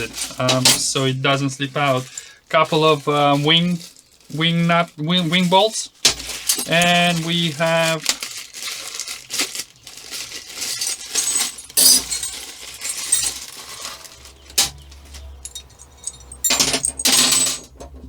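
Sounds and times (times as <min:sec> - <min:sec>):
metal parts clinking and knocking: 0:00.0 - 0:01.1, 0:05.3 - 0:18.0.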